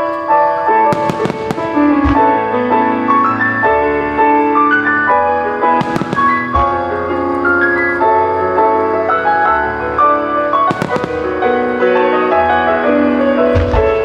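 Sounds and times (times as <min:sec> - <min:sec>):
music with held notes: 0:00.0 - 0:14.0
firework burst: 0:00.7 - 0:04.5, 0:05.6 - 0:08.1, 0:10.5 - 0:12.6
low firework boom: 0:00.9 - 0:02.9, 0:05.8 - 0:06.9.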